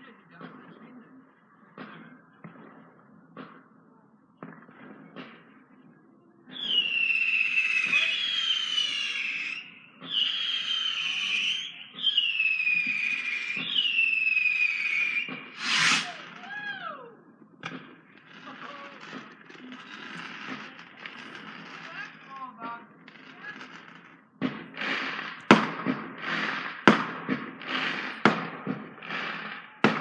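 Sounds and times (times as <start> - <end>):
firework whistles: 6.6 - 16.3
firework bang: 15.6 - 16.2
faint firework pops: 25.4 - 29.2.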